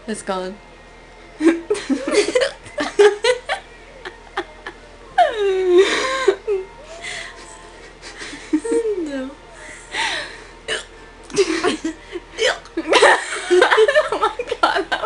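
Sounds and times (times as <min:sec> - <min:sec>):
person laughing and giggling: 0:01.4 - 0:06.7, 0:07.8 - 0:09.0, 0:11.3 - 0:12.0, 0:12.8 - 0:15.0.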